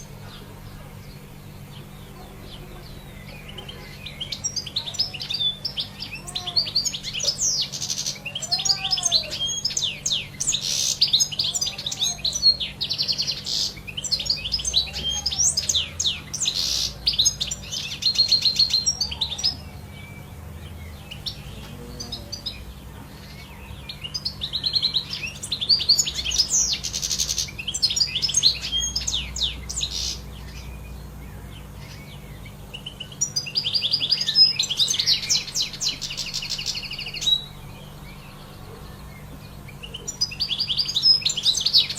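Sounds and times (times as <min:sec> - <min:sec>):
goldfinch singing: 0:00.0 - 0:41.9.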